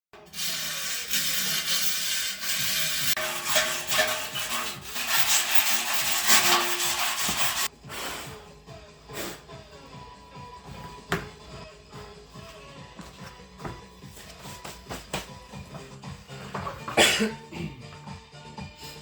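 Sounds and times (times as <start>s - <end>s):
rubbing and scraping: 0.2s - 7.7s.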